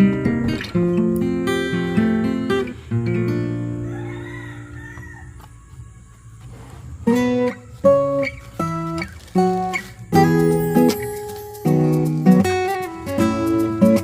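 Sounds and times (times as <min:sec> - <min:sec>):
acoustic guitar music: 0:00.0 - 0:14.0.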